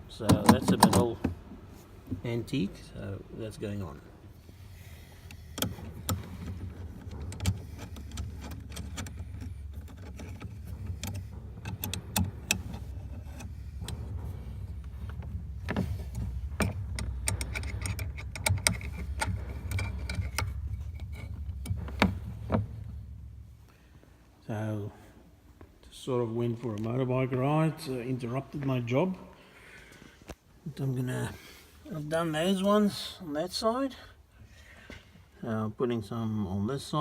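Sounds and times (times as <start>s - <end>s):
clicks and rattles: 0.2s - 1.4s, 5.2s - 23.8s
low motor rumble: 1.4s - 25.6s.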